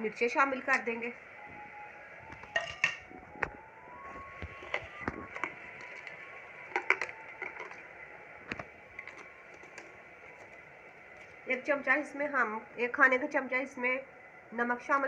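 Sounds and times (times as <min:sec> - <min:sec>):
kitchen utensils clicking and knocking: 0:02.4 - 0:03.1, 0:09.0 - 0:10.6.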